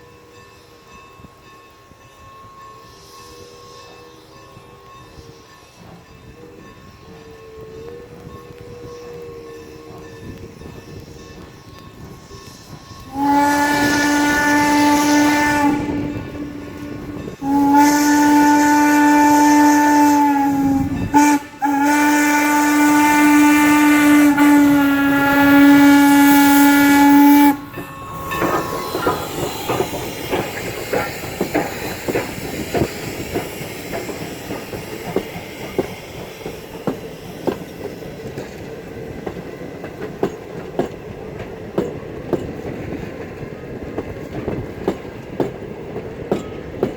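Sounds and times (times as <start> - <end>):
steam locomotive whistle blasts: 2.1 - 37.6
train wheels clicking over rail joints: 5.8 - 46.9.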